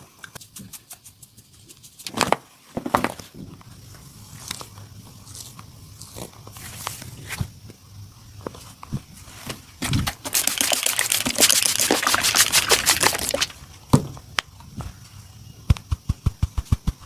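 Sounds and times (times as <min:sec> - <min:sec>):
rhythmic slapping massage strokes: 0:00.3 - 0:02.2, 0:10.3 - 0:13.5, 0:15.7 - 0:17.0
hands rubbing skin briskly: 0:10.3 - 0:13.5.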